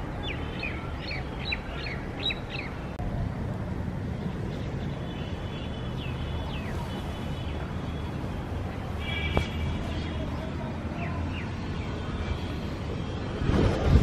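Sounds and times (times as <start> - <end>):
city traffic rumble: 0.0 - 14.0
small birds chirping: 0.2 - 3.0, 4.5 - 8.4.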